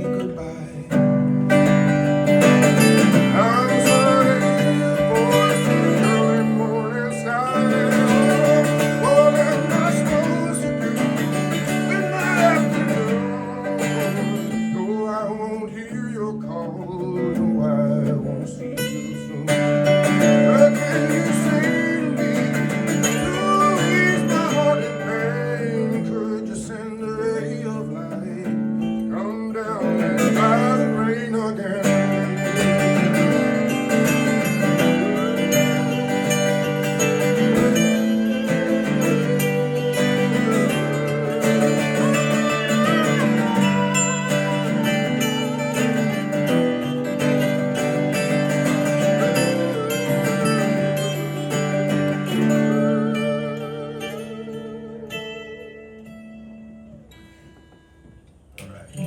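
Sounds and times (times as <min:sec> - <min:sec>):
bending sliding lead melody: 0:00.0 - 0:15.4, 0:30.0 - 0:57.0
strummed acoustic guitar: 0:00.0 - 0:59.0.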